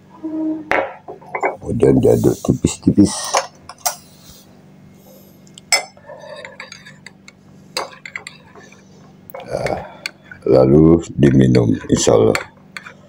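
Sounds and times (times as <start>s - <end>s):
spoon stirring and clinking in cup: 5.7s - 8.8s, 11.2s - 13.0s.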